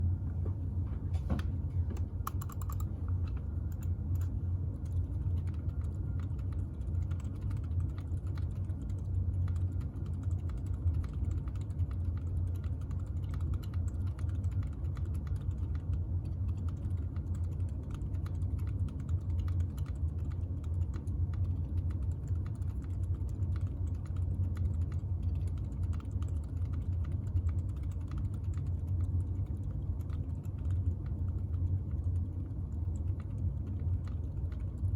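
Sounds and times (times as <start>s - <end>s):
low hvac hum: 0.0s - 34.9s
mechanical keyboard key clacks: 2.3s - 2.9s.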